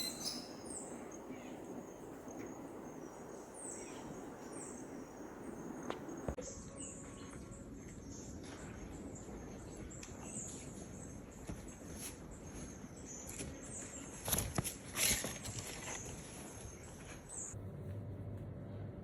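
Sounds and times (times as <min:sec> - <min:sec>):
birds chirping: 0:00.0 - 0:14.3.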